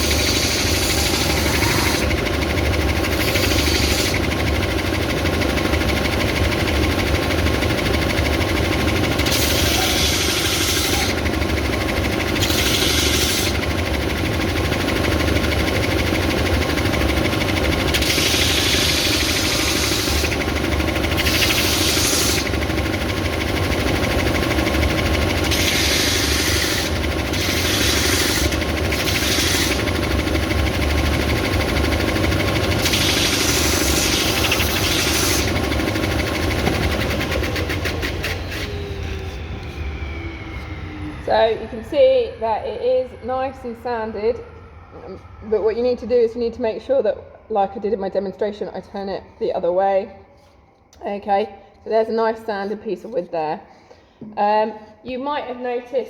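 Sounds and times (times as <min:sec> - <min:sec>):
wood sanding hiss: 0:00.0 - 0:02.0, 0:03.2 - 0:04.2, 0:09.3 - 0:11.1, 0:18.1 - 0:20.3, 0:21.2 - 0:22.5, 0:25.5 - 0:29.9, 0:32.8 - 0:35.6
belt sander motor hum: 0:00.0 - 0:46.2.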